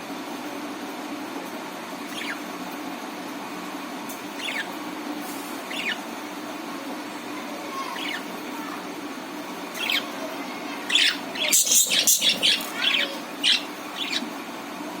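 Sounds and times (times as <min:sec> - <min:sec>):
budgerigars chirping: 0:02.1 - 0:02.4, 0:04.4 - 0:04.7, 0:05.7 - 0:06.1, 0:08.0 - 0:08.3, 0:09.7 - 0:10.1, 0:10.9 - 0:14.3.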